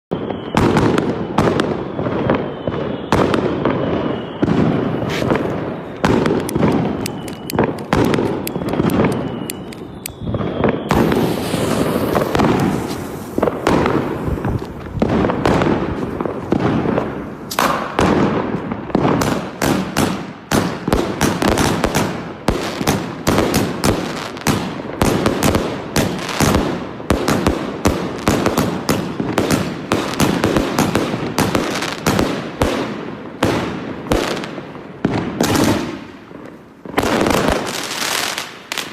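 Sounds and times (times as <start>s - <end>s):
whistling firework tails: 0.1s - 38.9s
firework aerial bangs: 0.2s - 38.9s
firework launch thumps: 10.9s - 18.7s.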